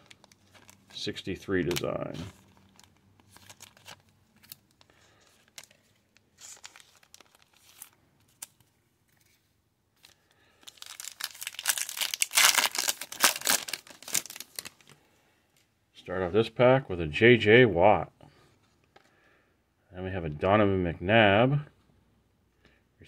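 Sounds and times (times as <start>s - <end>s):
wrapper tearing and crinkling: 0.0s - 1.1s, 1.7s - 5.8s, 6.4s - 8.6s, 10.0s - 15.0s
cards clicking and rustling: 0.0s - 5.8s, 10.0s - 15.0s.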